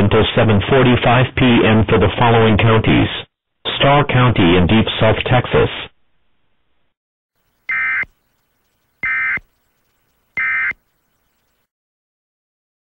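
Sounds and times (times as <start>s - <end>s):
digital data tone bursts: 7.6s - 8.2s, 9.0s - 9.5s, 10.4s - 10.8s.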